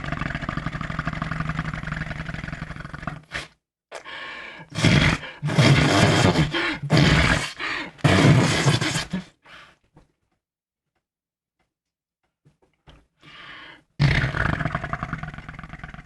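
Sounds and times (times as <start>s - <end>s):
person making fart sounds: 0.0s - 3.6s, 4.7s - 9.4s, 14.0s - 16.0s.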